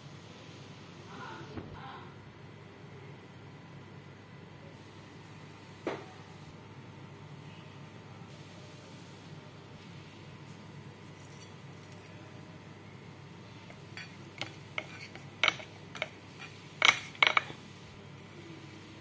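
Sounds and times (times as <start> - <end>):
utensils clinking against dishes: 13.7 - 17.6.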